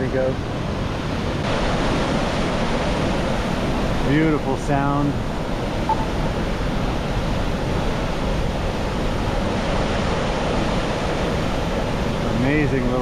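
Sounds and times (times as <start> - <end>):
waterfall rushing: 1.4 - 13.0.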